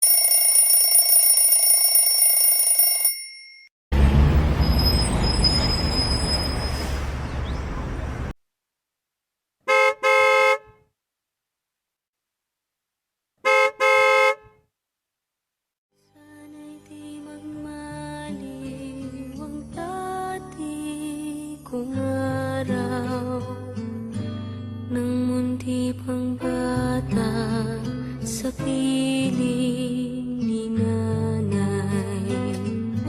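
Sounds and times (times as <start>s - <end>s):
high ringing tone: 0.0s - 3.7s
noisy rumble: 4.0s - 8.4s
car horn beeping: 9.7s - 10.8s, 13.4s - 14.6s.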